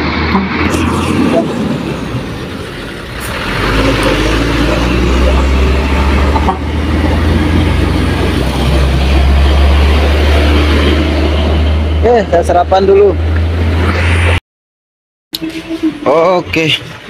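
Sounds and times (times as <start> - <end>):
truck engine running: 0.0 - 13.2.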